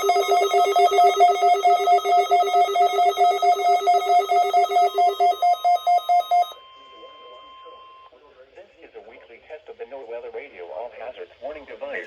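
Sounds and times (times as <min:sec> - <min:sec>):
steady alert tone: 0:00.0 - 0:06.5
rapid beeping: 0:00.0 - 0:06.6.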